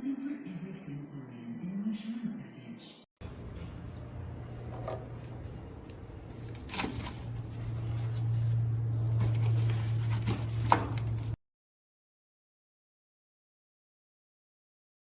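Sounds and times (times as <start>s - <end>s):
microwave oven humming: 3.2s - 6.5s.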